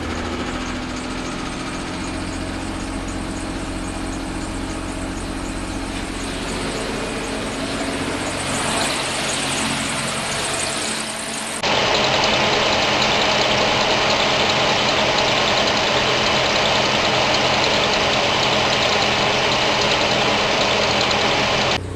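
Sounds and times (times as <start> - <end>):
car engine idling: 11.6 - 21.8.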